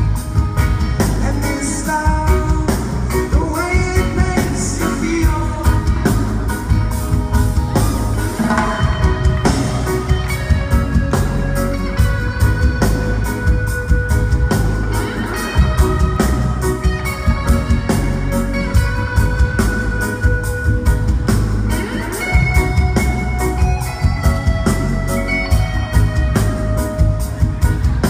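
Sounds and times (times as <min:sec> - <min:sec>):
deep bass: 0:00.0 - 0:28.0
guitar: 0:00.0 - 0:28.0
steady drum beat: 0:00.0 - 0:28.0
person singing: 0:01.1 - 0:06.4.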